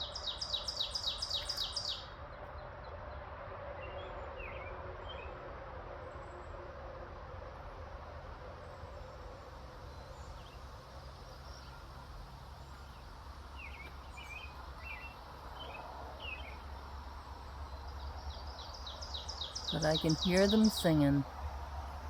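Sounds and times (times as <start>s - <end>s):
songbirds chirping: 0.0s - 3.2s, 8.8s - 22.0s
distant traffic rumble: 0.0s - 22.0s.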